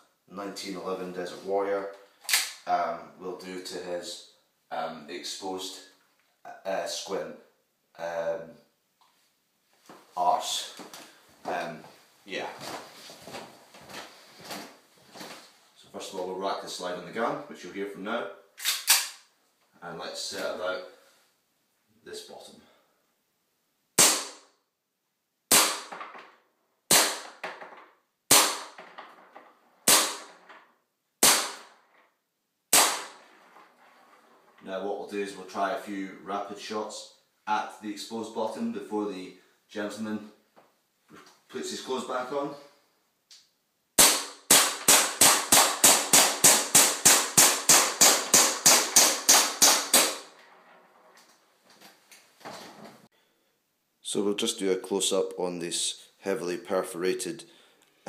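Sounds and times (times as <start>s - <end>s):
airsoft pistol shots: 24.0s - 24.5s, 25.5s - 26.2s, 26.9s - 27.5s, 28.3s - 28.8s, 29.9s - 30.4s, 31.2s - 31.8s, 32.7s - 33.2s, 44.0s - 50.4s.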